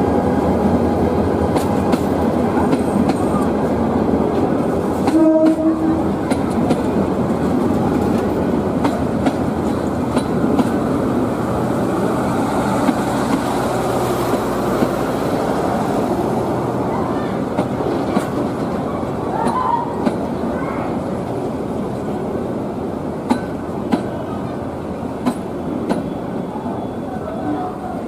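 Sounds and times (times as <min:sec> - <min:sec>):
diesel locomotive rumble: 0:00.0 - 0:28.0
train wheels clattering over rail joints: 0:04.3 - 0:10.8, 0:17.5 - 0:18.8, 0:23.2 - 0:24.2, 0:25.2 - 0:26.2.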